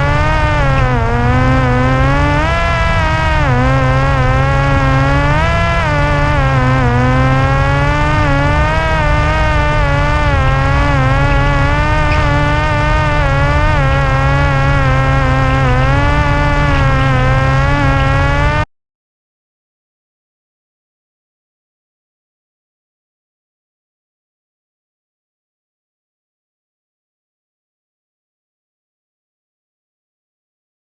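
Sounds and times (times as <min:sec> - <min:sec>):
electric propeller motor buzzing: 0:00.0 - 0:18.7.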